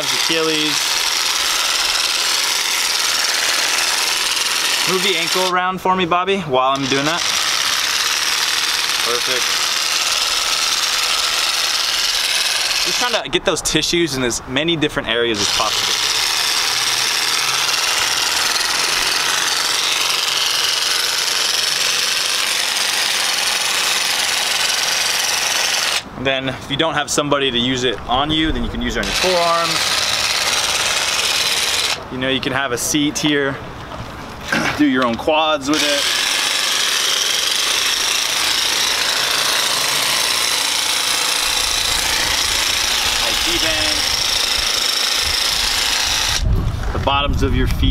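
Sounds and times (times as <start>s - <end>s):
massage gun hammering: 15.5s - 26.0s, 29.0s - 32.0s, 35.8s - 46.5s.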